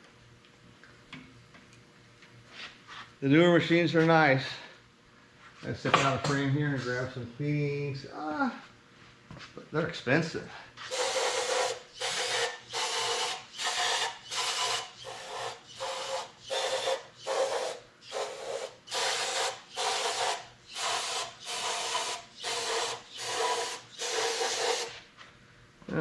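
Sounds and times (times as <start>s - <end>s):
rhythmic scrubbing strokes on metal: 10.8s - 25.0s.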